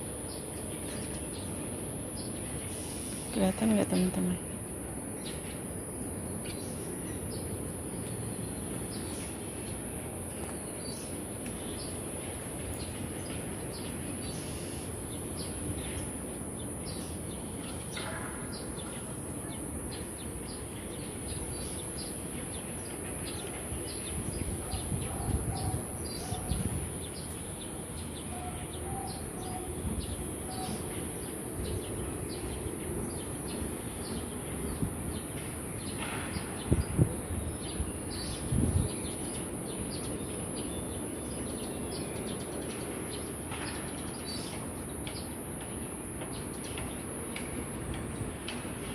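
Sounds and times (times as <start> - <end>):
steady high-pitched hiss: 0.0 - 48.9
birds chirping: 0.2 - 4.4.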